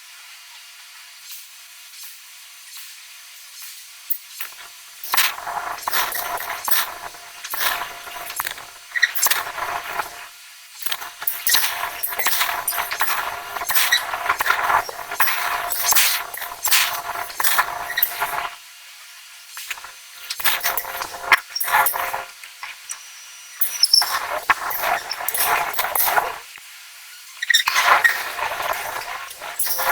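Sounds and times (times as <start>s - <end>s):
forging machinery clanking metal: 10.9s - 18.4s.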